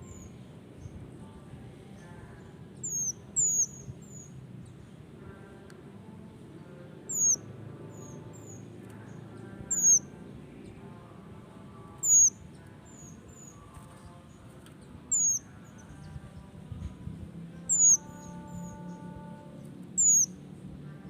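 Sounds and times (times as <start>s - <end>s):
bird high-pitched whistles: 2.9s - 4.3s, 9.7s - 10.0s, 12.0s - 12.4s, 15.1s - 15.4s, 17.7s - 18.8s, 20.0s - 20.3s.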